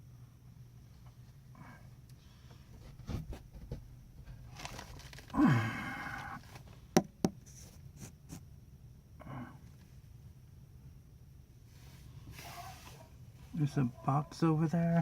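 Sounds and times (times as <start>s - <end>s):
man sighing: 5.3s - 6.5s, 9.2s - 9.6s.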